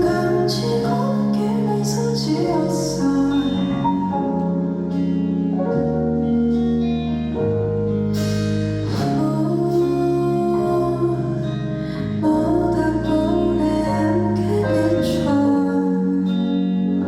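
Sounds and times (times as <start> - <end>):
live band playing held chords: 0.0 - 11.4.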